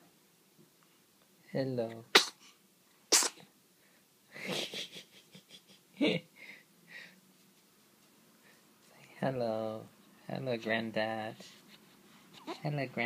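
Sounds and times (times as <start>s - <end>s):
baby sneezing: 2.0s - 2.5s, 3.1s - 3.5s.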